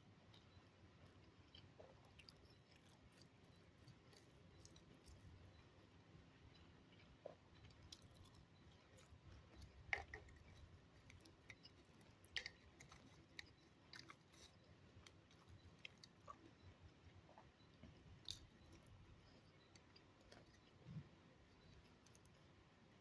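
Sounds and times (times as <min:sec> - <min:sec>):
mouth chewing food: 0:00.0 - 0:23.0
wet mouth clicks and smacks: 0:07.3 - 0:14.6.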